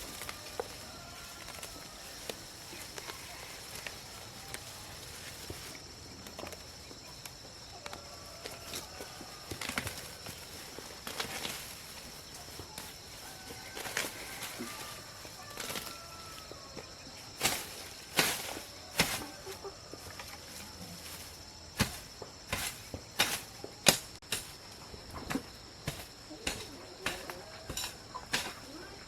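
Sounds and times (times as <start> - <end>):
hand tool chopping into ground: 17.4 - 19.6, 21.7 - 24.6, 25.2 - 28.8.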